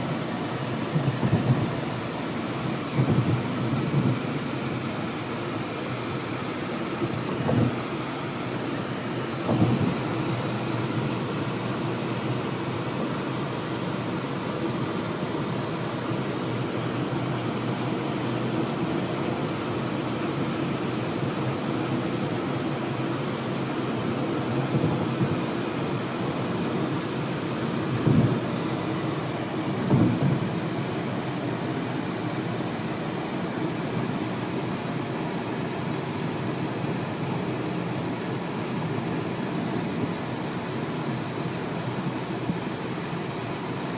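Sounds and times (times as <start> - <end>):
wind gusts thumping on microphone: 0.8 - 2.1, 2.8 - 4.4, 7.0 - 7.9, 9.4 - 10.3, 27.9 - 28.6, 29.8 - 30.7
strong wind roaring: 2.9 - 4.5, 7.0 - 7.9, 9.4 - 10.8, 27.9 - 28.6.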